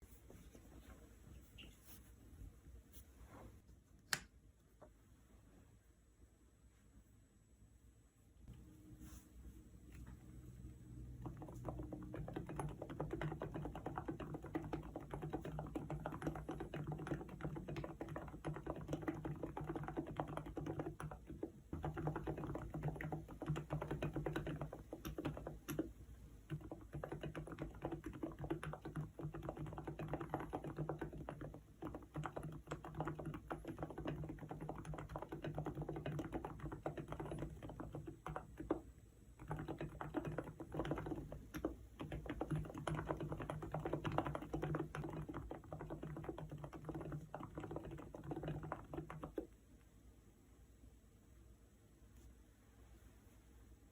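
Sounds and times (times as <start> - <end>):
fast keyboard typing: 10.8 - 49.6.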